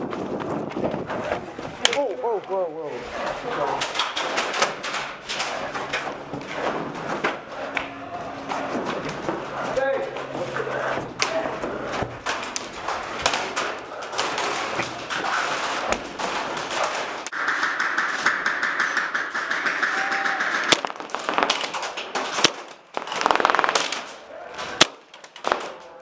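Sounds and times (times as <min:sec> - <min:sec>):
airsoft guns clicking: 0:01.8 - 0:02.6, 0:03.7 - 0:06.2, 0:12.2 - 0:24.2, 0:24.8 - 0:25.9.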